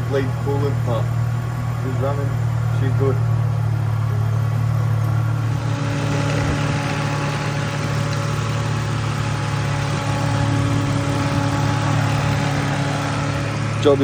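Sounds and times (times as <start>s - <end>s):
car engine idling: 0.0s - 14.0s.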